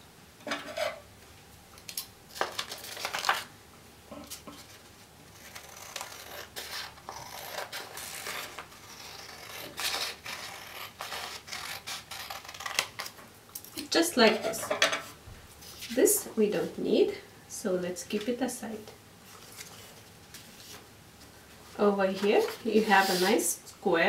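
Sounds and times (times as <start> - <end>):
scissors snipping paper: 5.4 - 13.2
paper rustling: 19.2 - 20.9.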